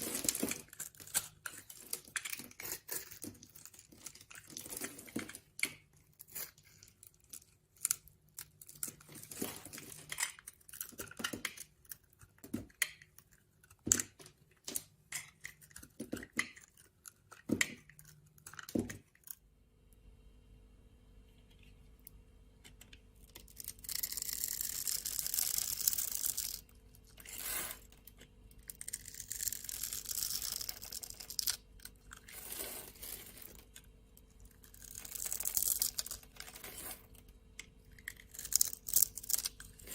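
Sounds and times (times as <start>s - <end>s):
knife cutting soap: 0.0s - 19.0s
faint steady hum: 0.0s - 39.9s.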